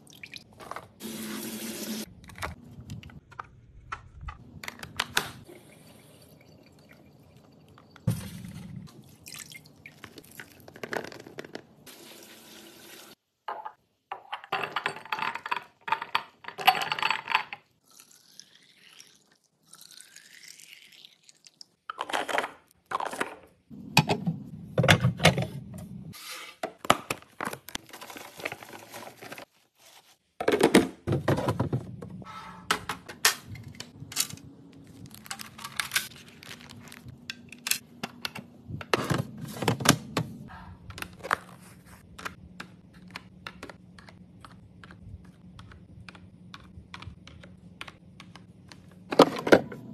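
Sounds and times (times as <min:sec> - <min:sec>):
tap water running and splashing: 0:11.9 - 0:13.2.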